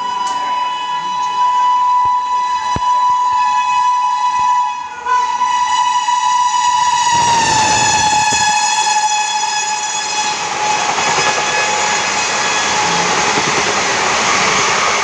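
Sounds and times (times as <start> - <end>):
locomotive horn blast: 0.0 - 12.9.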